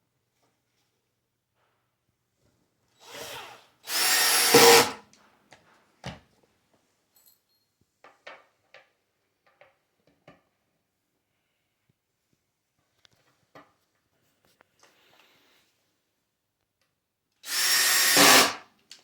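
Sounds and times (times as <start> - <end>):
cordless drill driving screws: 3.0 - 5.0, 17.4 - 18.6.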